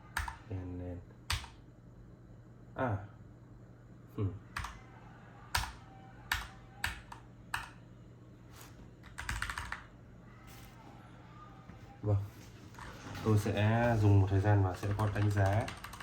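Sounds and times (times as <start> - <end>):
mechanical keyboard keystrokes: 9.0 - 9.9, 14.8 - 16.0.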